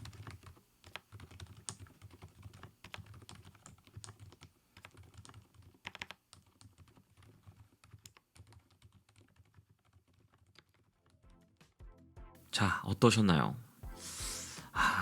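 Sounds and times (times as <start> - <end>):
soft keyboard keystrokes: 0.0 - 11.2.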